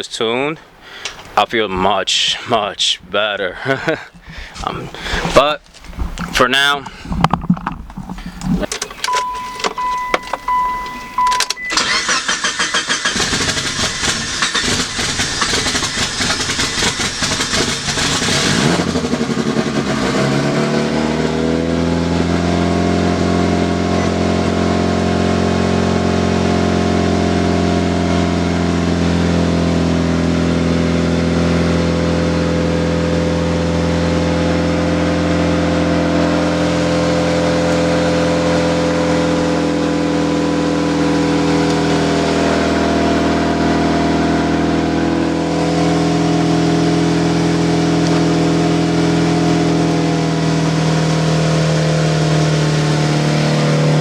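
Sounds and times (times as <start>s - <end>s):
starter motor cranking: 6.1s - 18.9s
car engine idling fast: 6.2s - 54.0s
short electronic chime: 9.0s - 12.2s.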